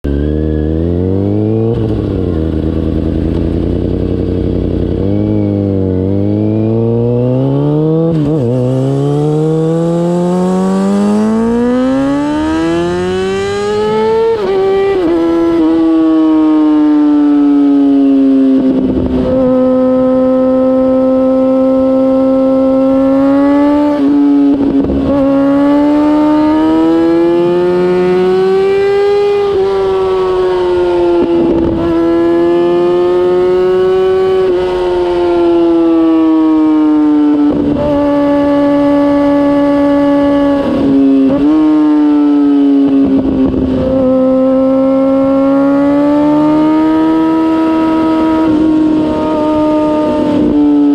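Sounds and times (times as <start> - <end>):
motorcycle engine at high revs: 0.0 - 50.9.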